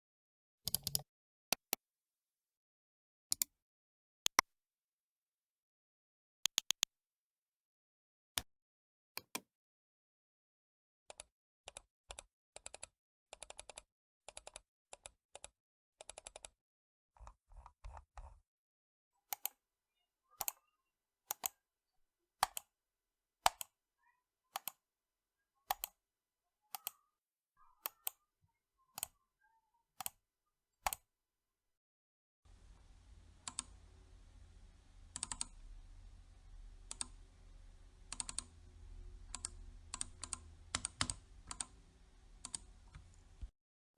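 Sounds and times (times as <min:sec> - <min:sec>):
computer mouse clicking: 0:00.7 - 0:01.0, 0:06.5 - 0:06.9, 0:09.2 - 0:09.4, 0:21.3 - 0:21.6, 0:22.4 - 0:22.7, 0:23.5 - 0:23.7, 0:24.6 - 0:24.8, 0:25.7 - 0:26.0, 0:26.7 - 0:27.0, 0:30.8 - 0:31.0, 0:32.5 - 0:43.5
background hiss: 0:32.5 - 0:43.5
low hum: 0:32.5 - 0:43.5.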